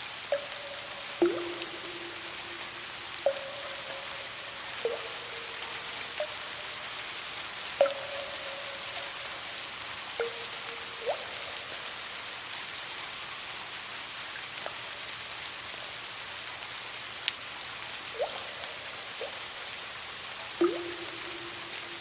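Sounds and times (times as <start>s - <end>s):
rain hiss: 0.0s - 22.0s
water drops plinking: 0.3s - 12.0s, 18.2s - 19.6s, 20.6s - 22.0s.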